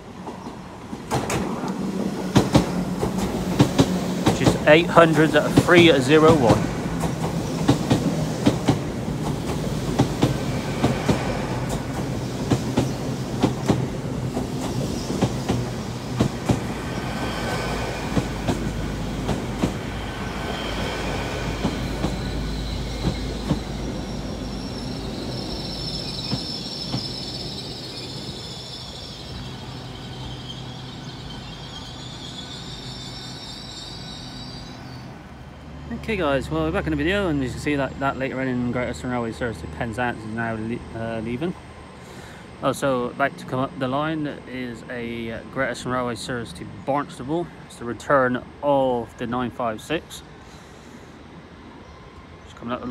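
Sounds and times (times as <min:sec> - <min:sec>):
train wheels clicking over rail joints: 0:00.3 - 0:24.4
train wheel flange squeal: 0:09.6 - 0:13.7, 0:14.6 - 0:35.2.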